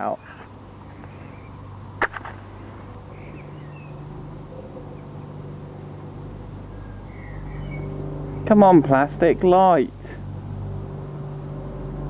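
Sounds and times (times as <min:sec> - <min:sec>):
low engine hum: 0:00.0 - 0:12.0
sharp click: 0:02.0 - 0:02.4.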